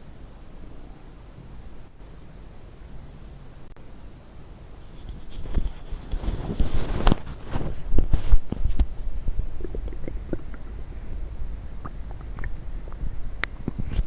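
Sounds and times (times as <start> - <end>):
stomach gurgling and rumbling: 5.1 - 14.0.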